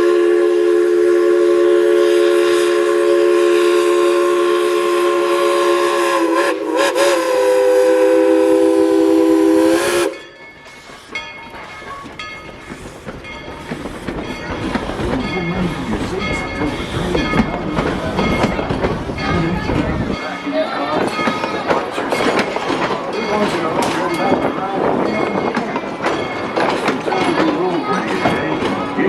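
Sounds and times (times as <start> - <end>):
steam locomotive chime whistle: 0.0 - 11.0
train clicking and rattling: 8.7 - 29.0.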